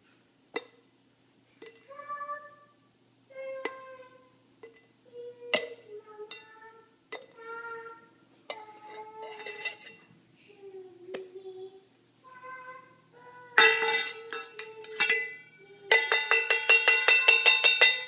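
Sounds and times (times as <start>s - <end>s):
toy spatula striking toy skillet: 13.6s - 18.0s.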